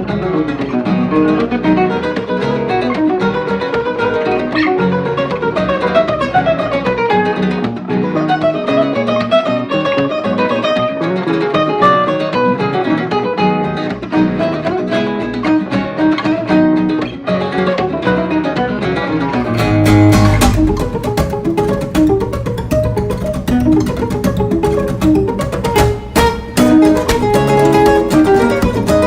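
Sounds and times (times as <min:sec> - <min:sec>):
acoustic guitar duet: 0:00.0 - 0:29.0
percussive strikes on guitar body: 0:19.4 - 0:29.0.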